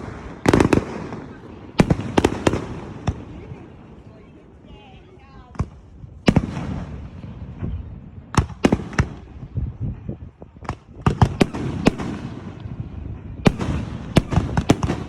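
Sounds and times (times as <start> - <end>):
fireworks banging: 0.0 - 4.1, 5.5 - 15.0
distant fireworks rumble: 0.0 - 15.0.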